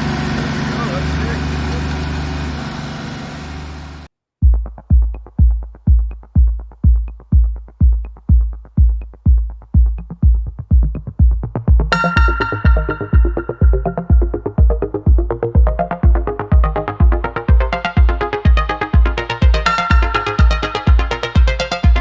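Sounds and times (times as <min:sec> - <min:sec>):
tractor diesel engine revving: 0:00.0 - 0:04.1
electronic music with kick drum: 0:04.4 - 0:22.0.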